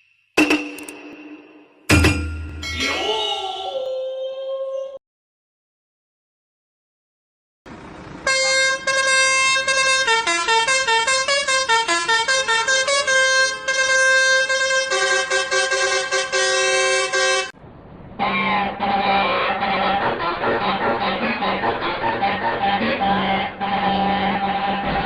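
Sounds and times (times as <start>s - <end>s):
car horn honking a tune: 8.2s - 17.5s.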